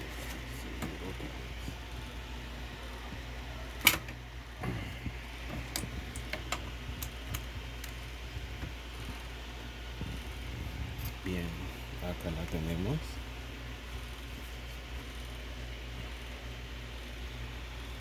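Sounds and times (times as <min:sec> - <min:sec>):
low steady hum: 0:00.0 - 0:18.0
graphics card clicking and knocking: 0:05.4 - 0:09.2.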